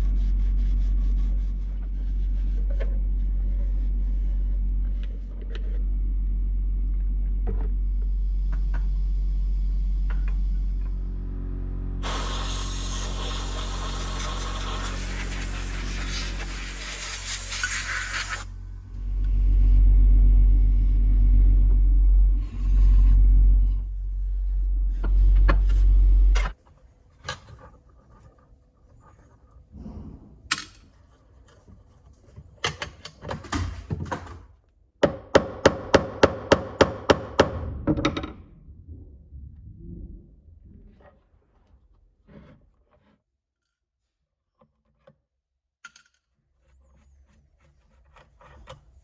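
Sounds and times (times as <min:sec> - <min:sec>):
loud low hum: 0:00.0 - 0:26.5, 0:29.7 - 0:30.5, 0:37.2 - 0:41.0
loud hiss: 0:12.0 - 0:18.6.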